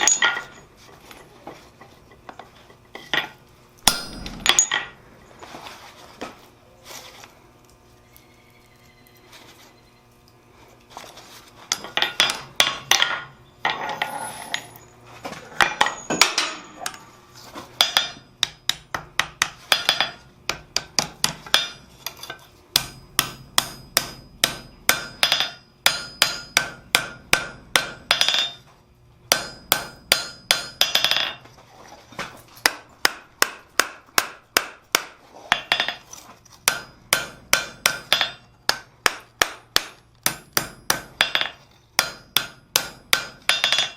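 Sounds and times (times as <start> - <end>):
hammer striking hot steel on anvil: 3.0 - 5.0, 17.8 - 28.7, 29.3 - 31.4, 32.6 - 36.0, 36.6 - 43.9.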